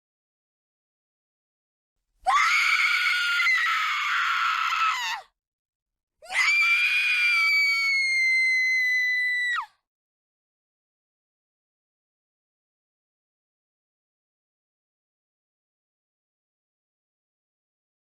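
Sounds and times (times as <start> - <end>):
woman screaming: 2.3 - 5.2, 6.3 - 9.7.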